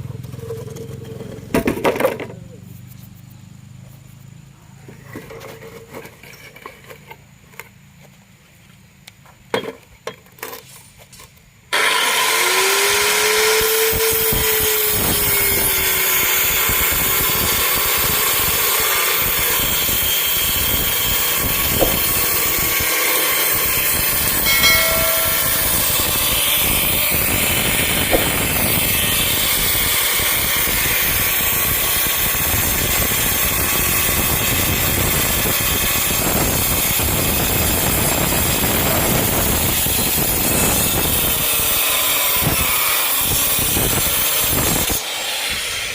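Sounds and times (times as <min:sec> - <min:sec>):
circular saw cutting plywood: 0:11.7 - 0:45.9.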